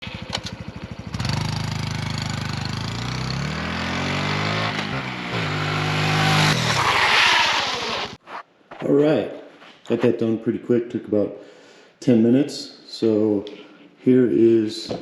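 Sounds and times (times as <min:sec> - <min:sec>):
motorcycle engine idling and revving: 0:00.0 - 0:08.2
electric starter cranking: 0:06.5 - 0:08.2.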